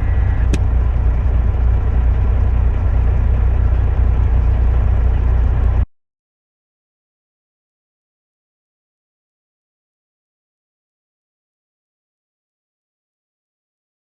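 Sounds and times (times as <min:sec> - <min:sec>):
truck engine rumbling: 0:00.0 - 0:05.9.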